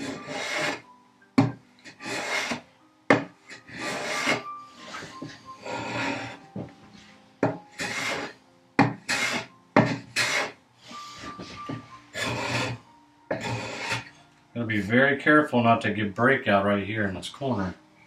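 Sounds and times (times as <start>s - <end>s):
hand plane shaving wood: 0.0s - 0.8s, 1.8s - 6.4s, 7.8s - 14.1s
plane knocking on wood: 1.4s - 6.7s, 7.4s - 10.5s.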